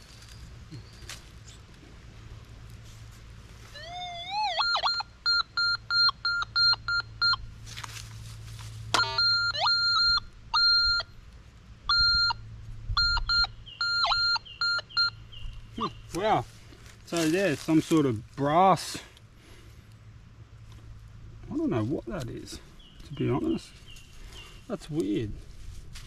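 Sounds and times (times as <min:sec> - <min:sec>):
metal detector beeping: 0:03.7 - 0:07.5, 0:08.9 - 0:11.2, 0:11.9 - 0:15.2.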